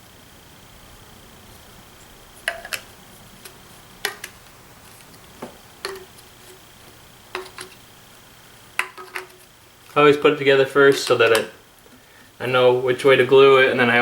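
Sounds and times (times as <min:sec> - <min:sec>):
plastic pipe clicking into fittings: 0:07.3 - 0:07.8, 0:08.8 - 0:09.4.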